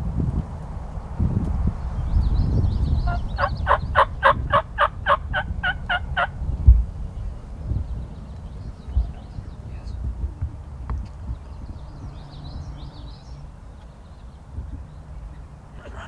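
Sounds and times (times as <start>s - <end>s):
low rumble of wind: 0.0s - 16.0s
wild turkey yelping: 3.0s - 6.4s.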